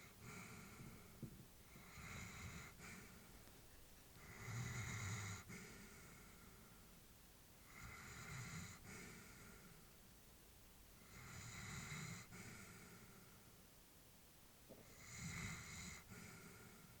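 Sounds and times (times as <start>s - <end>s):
dog breathing in sleep: 0.0s - 3.4s, 4.2s - 6.9s, 7.6s - 10.0s, 11.0s - 13.6s, 14.8s - 17.0s.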